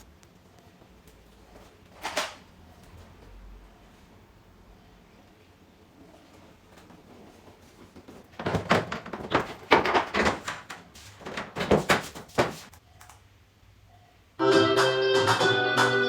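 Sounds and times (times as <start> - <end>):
hard objects knocking and clattering: 8.2 - 12.7.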